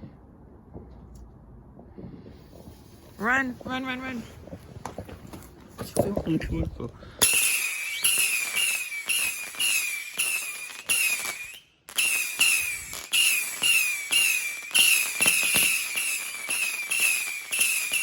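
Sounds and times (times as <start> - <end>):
whistling firework shots: 7.2 - 18.0.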